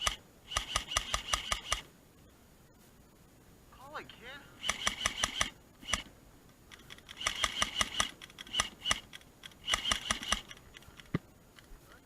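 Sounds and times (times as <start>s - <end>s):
airsoft gun firing rapid shots: 0.0s - 1.8s, 4.6s - 6.1s, 7.0s - 10.6s.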